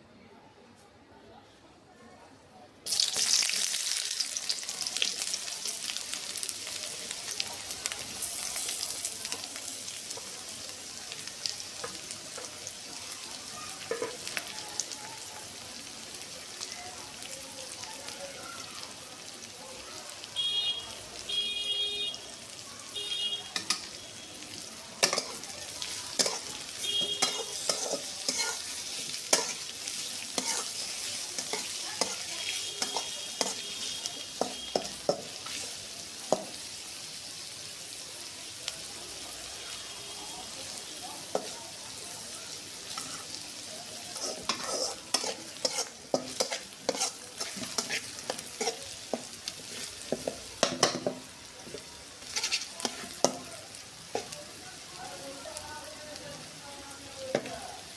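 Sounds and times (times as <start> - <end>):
liver sizzling in a pan: 2.9 - 57.9
metal spatula scraping and clicking: 13.8 - 14.4, 23.6 - 23.9, 25.0 - 35.6, 42.9 - 43.4, 44.1 - 51.1, 52.2 - 53.5, 54.1 - 54.4.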